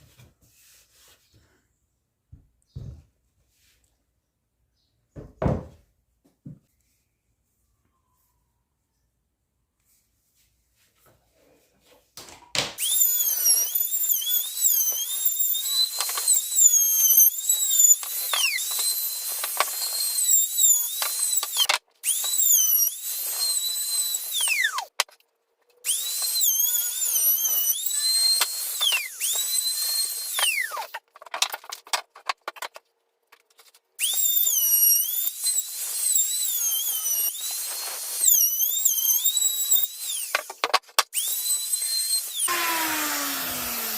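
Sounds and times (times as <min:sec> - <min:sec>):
small power tool whining: 0:12.8 - 0:25.0, 0:25.8 - 0:31.8, 0:34.0 - 0:43.9.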